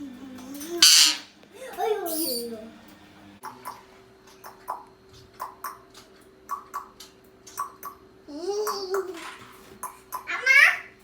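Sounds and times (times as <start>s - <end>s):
parrot call: 0.8s - 1.3s.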